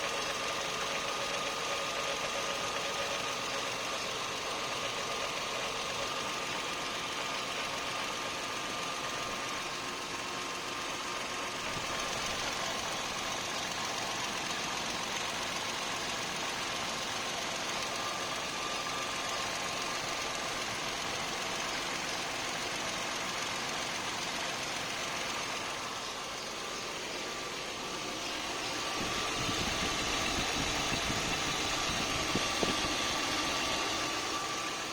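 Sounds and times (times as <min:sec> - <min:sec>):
engine running: 0:00.0 - 0:34.9.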